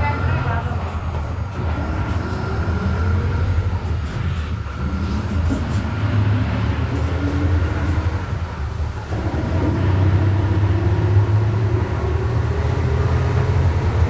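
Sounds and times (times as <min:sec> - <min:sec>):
bus diesel engine drone: 0:00.0 - 0:14.0.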